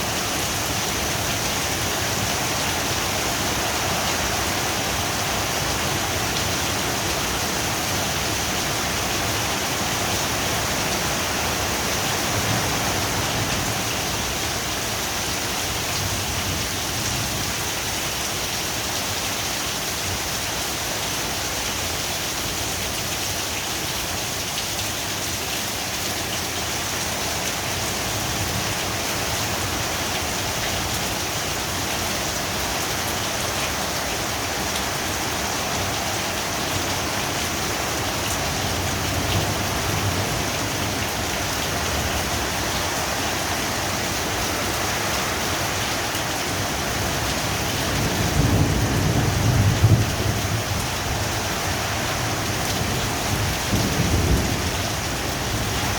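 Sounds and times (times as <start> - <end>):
heavy rain pouring: 0.0 - 55.9
thunder rumbling: 47.9 - 51.3, 52.8 - 55.8.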